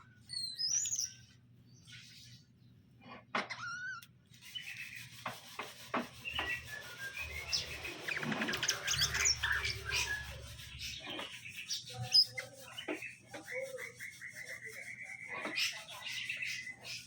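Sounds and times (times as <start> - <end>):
birds chirping and squawking: 0.0 - 2.2, 3.4 - 17.0
scraping and rubbing scratches: 4.3 - 17.0.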